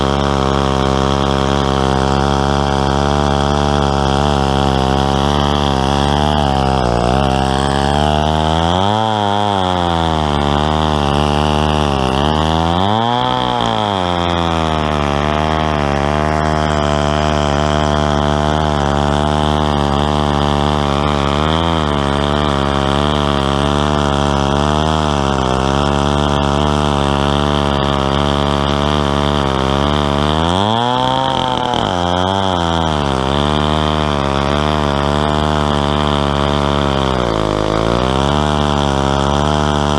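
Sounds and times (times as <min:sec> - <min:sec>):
chainsaw cutting through log: 0:00.0 - 0:39.9.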